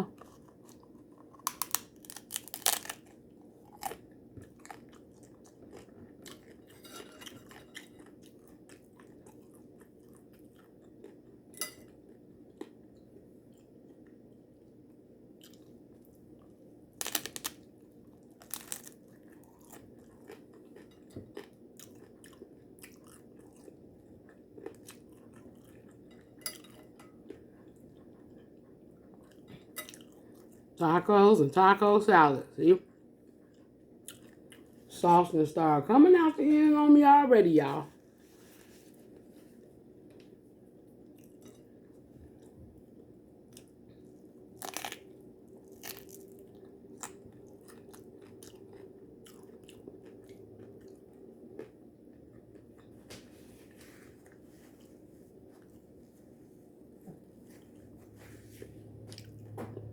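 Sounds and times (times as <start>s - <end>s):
person chewing crunchy food: 0.0s - 14.4s, 15.4s - 30.7s, 32.9s - 34.9s, 41.0s - 56.0s.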